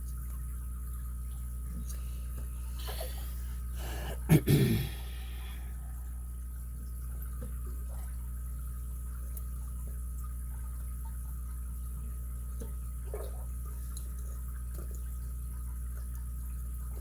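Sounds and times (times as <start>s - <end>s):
steady low hum: 0.0s - 17.0s
person sneezing: 3.8s - 5.1s.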